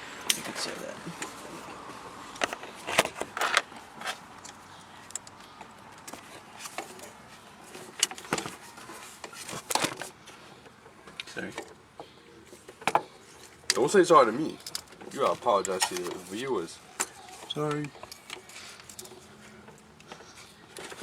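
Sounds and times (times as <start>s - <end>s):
plastic and metal parts clicking: 2.4s - 5.4s.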